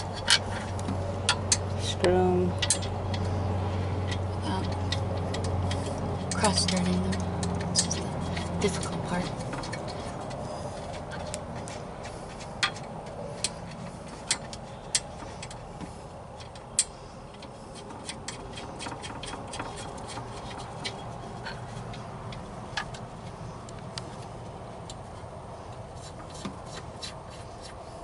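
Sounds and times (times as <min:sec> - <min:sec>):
bolts clicking while threaded: 0:00.0 - 0:03.4, 0:04.0 - 0:27.9.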